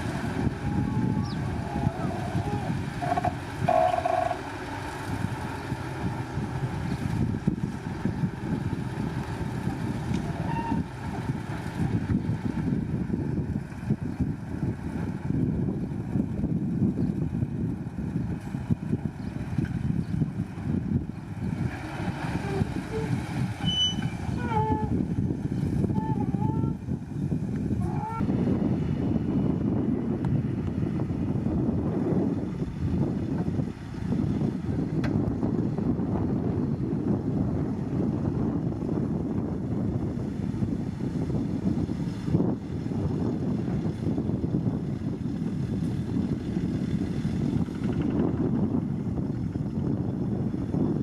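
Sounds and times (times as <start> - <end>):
diesel engines rumbling: 0.0 - 51.0
wind buffeting microphone: 0.0 - 51.0
short high-pitched squeals: 22.4 - 24.9.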